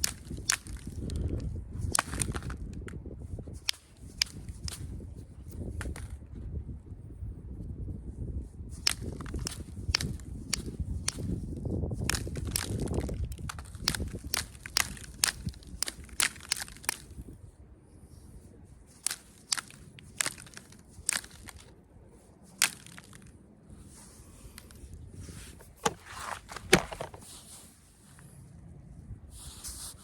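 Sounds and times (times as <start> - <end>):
flint knapping clicks: 0.0 - 6.1, 8.8 - 17.3, 18.9 - 21.8, 22.5 - 23.4, 24.4 - 25.0
soft scraping on stone: 23.7 - 28.4.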